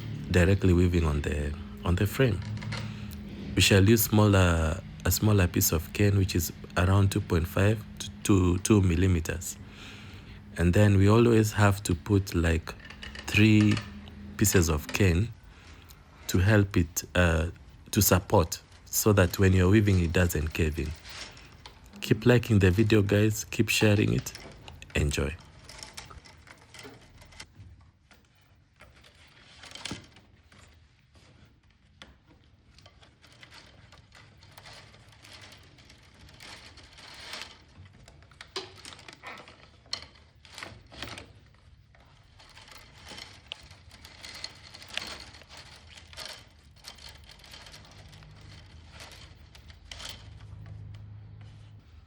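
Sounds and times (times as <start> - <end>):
cane clicking and rustling: 0.0 - 52.0.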